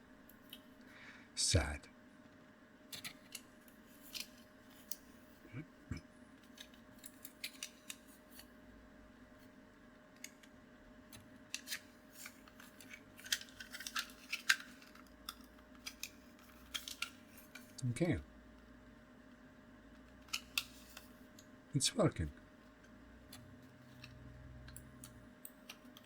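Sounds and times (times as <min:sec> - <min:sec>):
plastic parts clicking: 0:02.9 - 0:05.1, 0:06.4 - 0:08.5, 0:11.1 - 0:17.8, 0:20.2 - 0:21.5.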